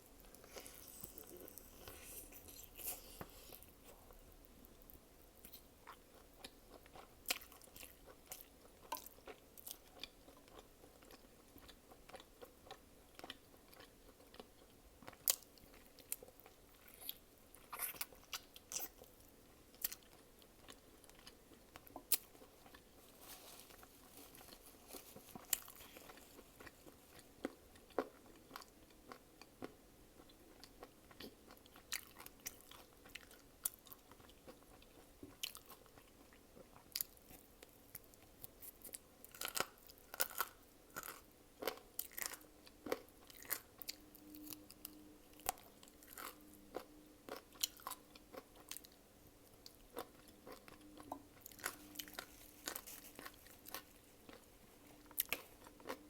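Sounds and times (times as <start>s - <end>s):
person chewing and biting: 0.2s - 4.1s, 19.8s - 29.2s, 49.6s - 56.0s.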